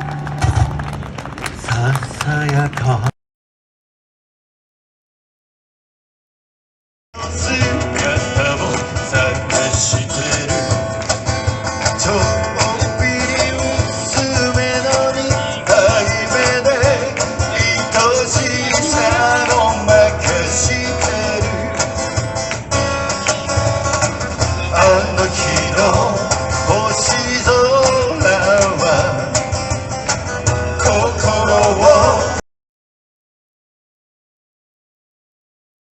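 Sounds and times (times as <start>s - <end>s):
strummed acoustic guitar: 7.2s - 32.4s
person singing: 12.0s - 21.7s, 30.8s - 32.4s.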